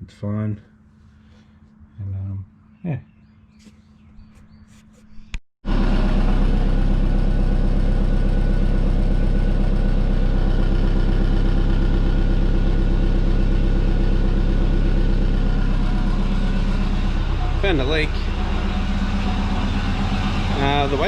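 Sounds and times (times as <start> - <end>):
car engine idling: 5.7 - 21.0.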